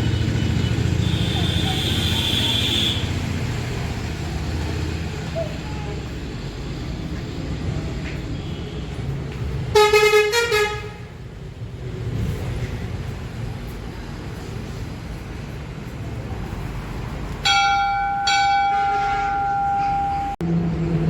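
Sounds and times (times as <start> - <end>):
engine and road rumble: 0.0 - 21.0
vehicle horn honking: 0.1 - 3.2, 9.7 - 11.1.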